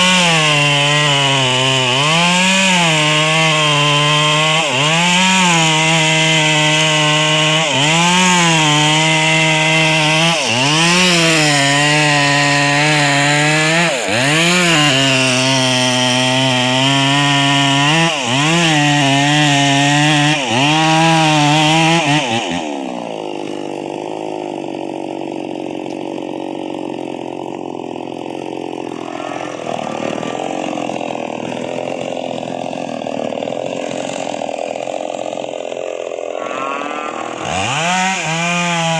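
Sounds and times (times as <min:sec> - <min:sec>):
chainsaw cutting wood: 0:00.0 - 0:38.9
rough engine noise: 0:28.6 - 0:32.5.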